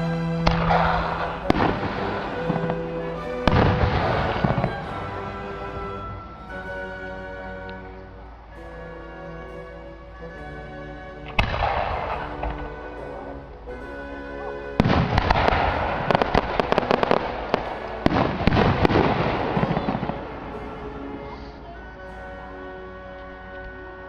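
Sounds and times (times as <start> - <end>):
music: 0.0 - 24.0
fireworks bangs and crackling: 0.5 - 5.0, 14.8 - 20.3.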